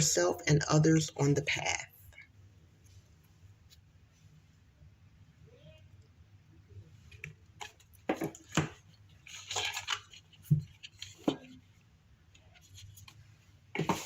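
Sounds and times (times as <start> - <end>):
paper rustle: 7.1 - 14.0
paper pages flicking and tapping: 7.2 - 11.6.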